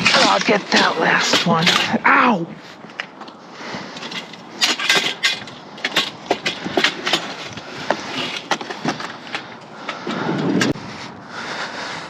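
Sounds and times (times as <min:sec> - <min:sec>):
scrap metal clattering: 0:03.8 - 0:10.8.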